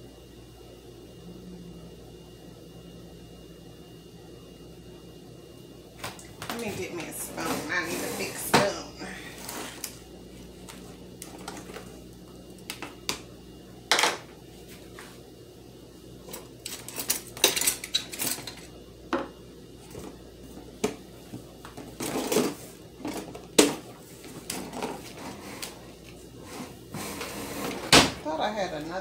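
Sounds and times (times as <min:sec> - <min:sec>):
metal utensils clattering: 0:16.7 - 0:18.7.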